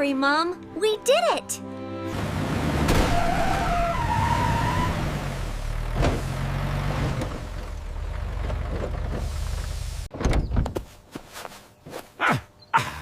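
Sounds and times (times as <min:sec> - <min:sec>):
vehicle engine rumbling: 0:02.1 - 0:10.7.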